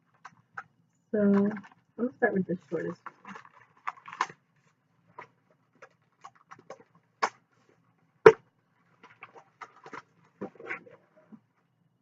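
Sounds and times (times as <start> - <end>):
plastic packaging crinkling: 2.6 - 6.9.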